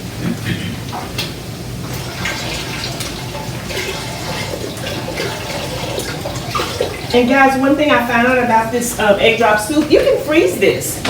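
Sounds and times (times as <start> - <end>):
broth pouring into a pot: 1.8 - 7.3.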